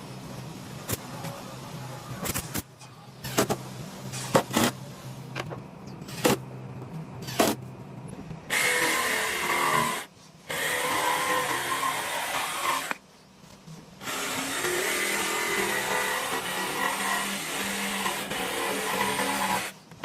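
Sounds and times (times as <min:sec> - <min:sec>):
power tool running on wood: 0:08.5 - 0:13.0, 0:14.0 - 0:19.7.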